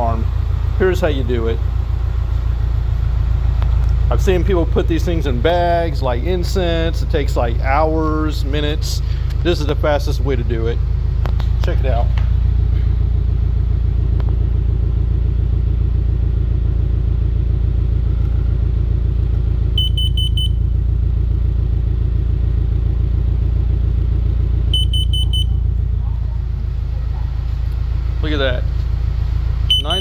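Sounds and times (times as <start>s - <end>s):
car engine idling: 0.0s - 30.0s
alarm beeping: 19.8s - 20.6s, 24.7s - 25.6s, 29.6s - 30.0s.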